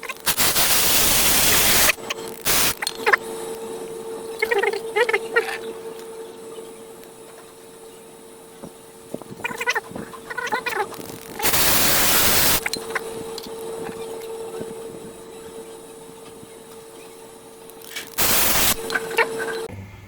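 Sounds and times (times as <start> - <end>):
machine hum: 0.0 - 20.0
loud spraying hiss: 0.3 - 3.2, 9.4 - 13.0, 17.9 - 19.2.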